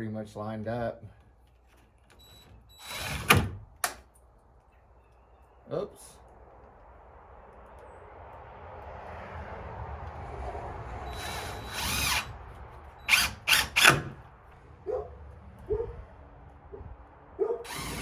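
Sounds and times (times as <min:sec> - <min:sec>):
power drill driving screws into metal: 0:02.7 - 0:04.0, 0:11.1 - 0:12.4, 0:13.0 - 0:14.2, 0:17.6 - 0:18.0.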